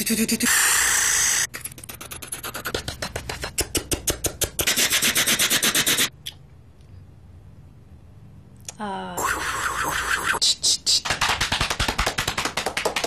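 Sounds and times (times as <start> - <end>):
person imitating helicopter: 0.0 - 6.1, 9.2 - 11.2.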